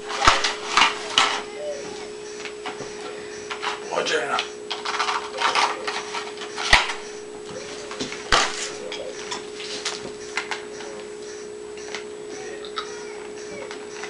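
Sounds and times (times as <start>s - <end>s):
steady hum: 0.0s - 14.0s
clattering handling noises: 4.7s - 7.0s.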